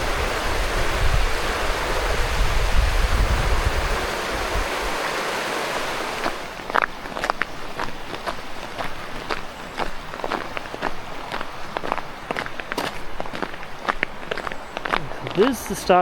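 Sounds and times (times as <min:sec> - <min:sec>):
wind buffeting microphone: 0:00.0 - 0:06.8
footsteps crunching on snow: 0:06.0 - 0:15.8.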